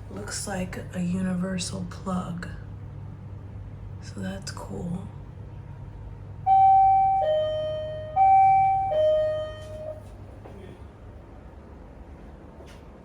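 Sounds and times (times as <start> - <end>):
doorbell ding-dong chime: 6.5 - 10.0.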